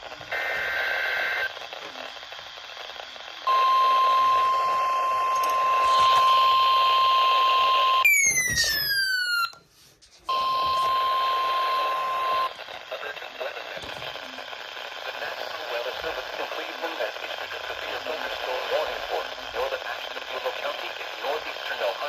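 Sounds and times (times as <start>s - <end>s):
radio static hiss: 0.0s - 6.2s, 10.4s - 22.0s
steady alarm tone: 3.5s - 9.6s, 10.3s - 12.5s.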